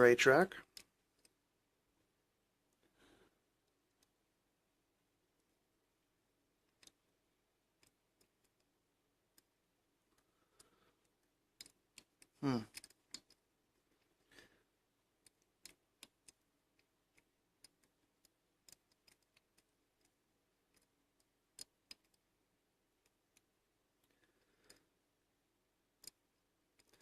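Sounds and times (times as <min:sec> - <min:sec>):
lock pick clicking: 0:15.2 - 0:22.2.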